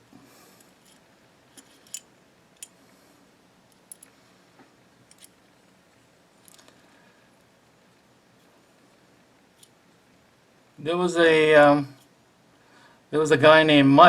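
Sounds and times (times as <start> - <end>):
small metal parts clicking: 0.6 - 2.8, 3.7 - 4.1, 5.0 - 5.4.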